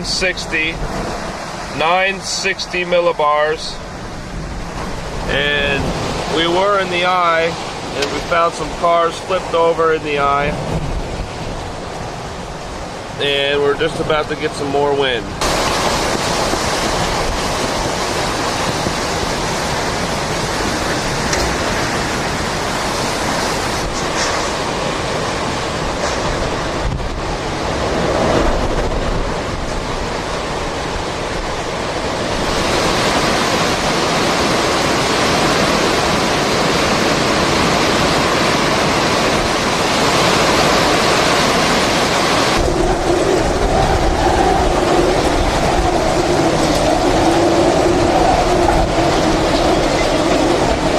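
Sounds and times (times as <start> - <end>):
strong wind rushing: 0.0 - 50.9.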